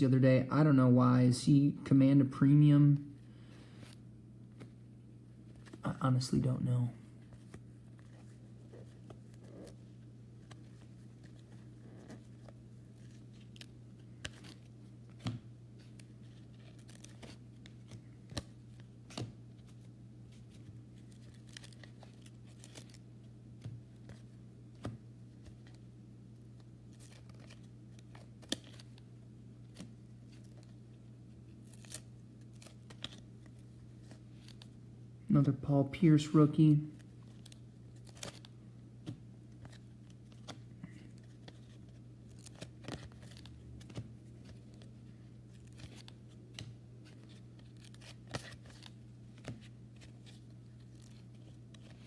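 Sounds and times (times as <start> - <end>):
steady low hum: 0.0 - 52.0
cards flicking and snapping: 8.9 - 25.8, 26.4 - 29.0, 29.6 - 30.8, 31.5 - 34.7, 37.0 - 44.9, 45.5 - 52.0.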